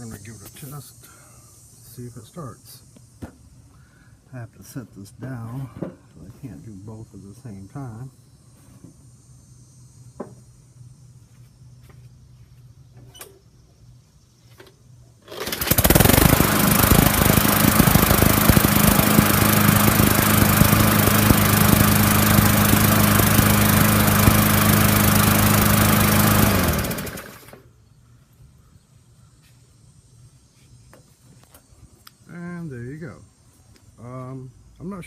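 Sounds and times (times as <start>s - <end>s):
mower engine pull start: 15.2s - 27.6s
mower engine running: 15.2s - 27.6s.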